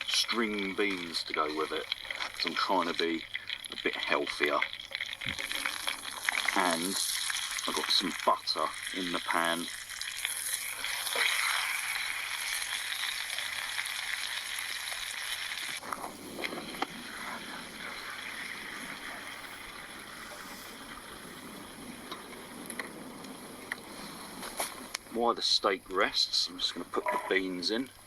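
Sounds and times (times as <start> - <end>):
steak sizzling in a frying pan: 0.0 - 21.5.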